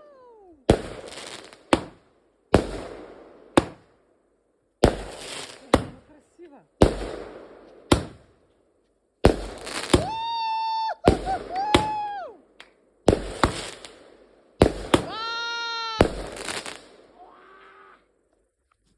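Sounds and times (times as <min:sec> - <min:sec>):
fireworks bangs: 0:00.0 - 0:03.9, 0:04.8 - 0:06.2, 0:06.8 - 0:08.4, 0:09.2 - 0:12.2, 0:13.0 - 0:17.5.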